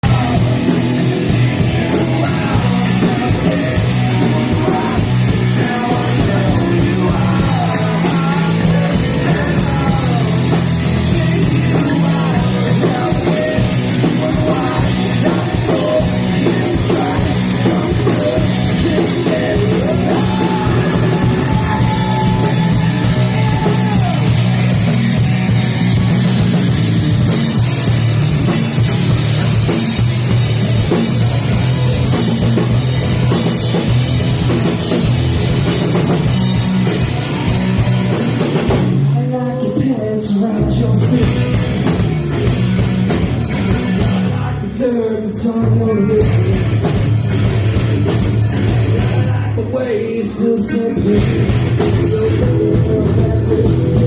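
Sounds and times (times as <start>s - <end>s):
melodic electric guitar line: 0.0s - 54.0s
rock band playing: 0.0s - 54.0s.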